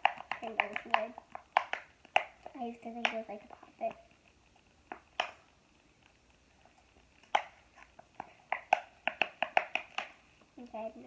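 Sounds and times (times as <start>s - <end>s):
plastic fidget toy clicking: 0.0s - 2.4s.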